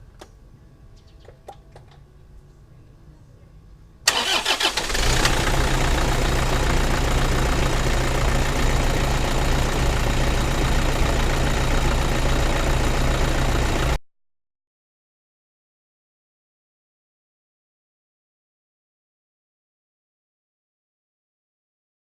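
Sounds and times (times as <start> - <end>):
diesel engine starting and idling: 4.1 - 14.0.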